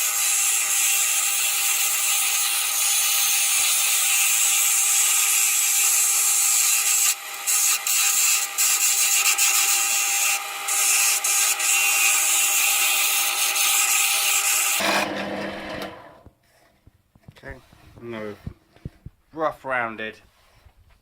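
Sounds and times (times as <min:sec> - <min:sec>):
gouge cutting wood on lathe: 0:00.0 - 0:16.2
lathe motor hum: 0:14.4 - 0:16.2.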